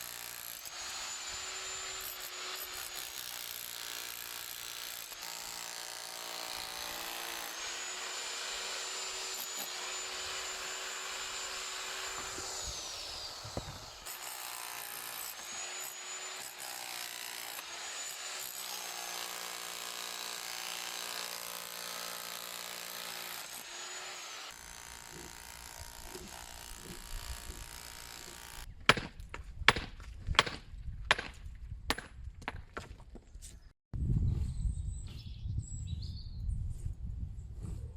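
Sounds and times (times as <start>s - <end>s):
power tool motor whine: 0.4s - 3.7s, 4.9s - 28.7s
sharp knocks: 28.9s - 33.0s.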